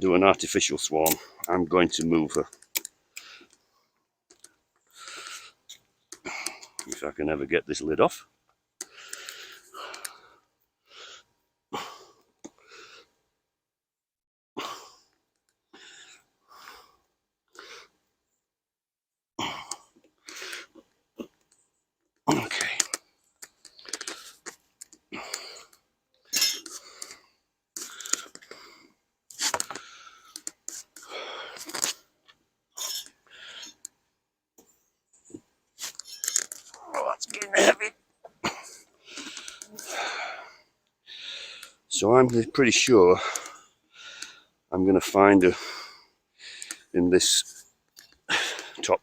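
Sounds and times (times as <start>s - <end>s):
person breathing heavily with effort: 4.9s - 6.9s, 8.8s - 13.2s, 29.6s - 31.9s, 38.6s - 41.9s, 43.2s - 44.6s, 48.3s - 48.8s.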